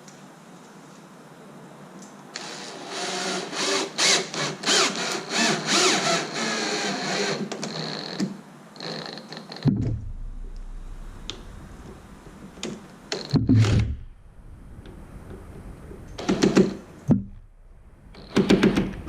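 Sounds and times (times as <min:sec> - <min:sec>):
screw squeaking in wood: 0:04.8 - 0:09.7
low thump: 0:09.6 - 0:12.6, 0:13.3 - 0:14.4.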